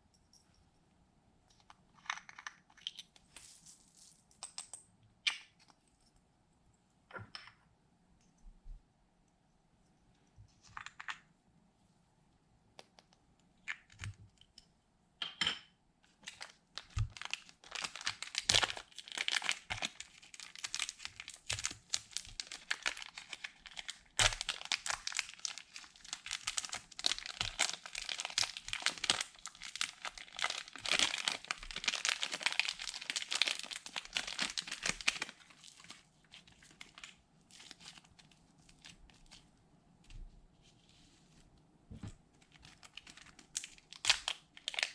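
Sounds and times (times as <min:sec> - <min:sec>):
slime crackling and popping: 0:16.8 - 0:35.4.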